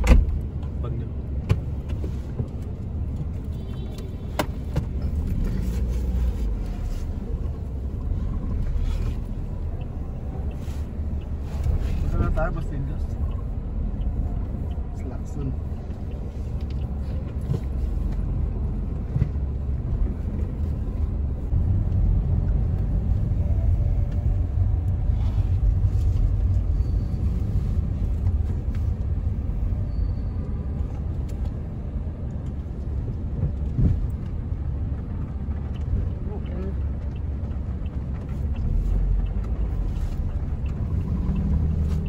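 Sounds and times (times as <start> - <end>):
car low rumble: 0.0 - 42.0.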